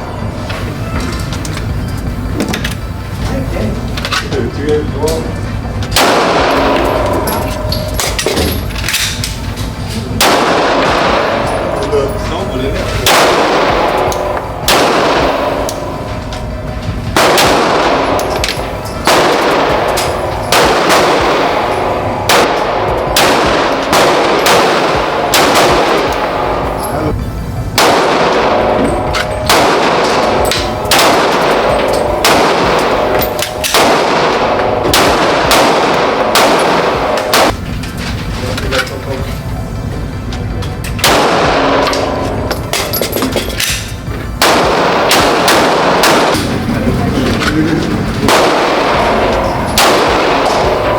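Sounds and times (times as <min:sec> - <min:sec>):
pistol shots with echo: 0:06.0 - 0:09.4, 0:10.2 - 0:27.1, 0:27.7 - 0:37.6, 0:41.0 - 0:46.8, 0:47.4 - 0:50.9.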